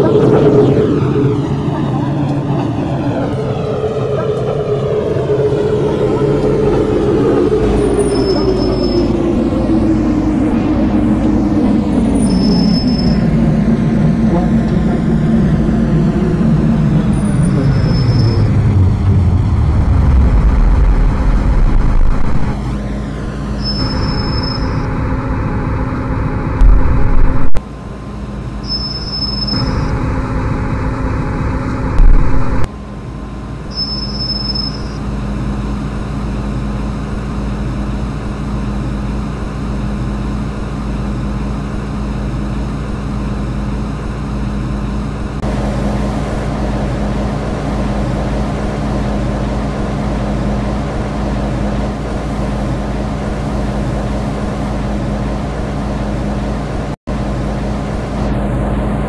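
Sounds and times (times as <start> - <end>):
electric motor hum: 0.0 - 23.6
train rumbling: 0.0 - 59.0.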